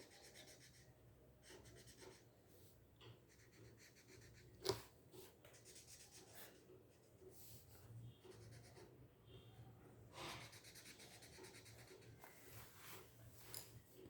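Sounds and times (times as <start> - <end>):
marker scratching on paper: 0.0 - 2.3, 3.3 - 7.7, 8.3 - 8.9, 10.2 - 13.0.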